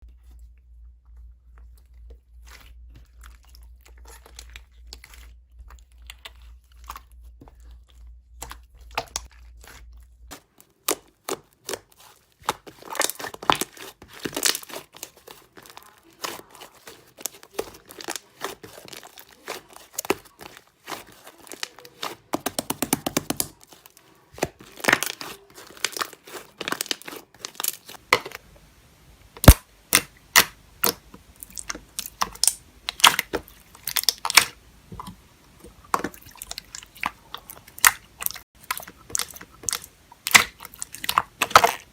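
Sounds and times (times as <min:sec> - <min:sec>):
slime crackling and popping: 0:08.3 - 0:28.4, 0:29.4 - 0:35.1, 0:35.9 - 0:41.9.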